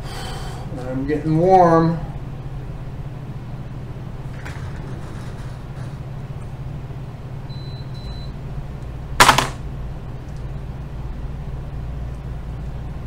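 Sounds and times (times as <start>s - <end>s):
steady low hum: 0.0s - 13.0s
sharp loud clack: 9.2s - 9.6s.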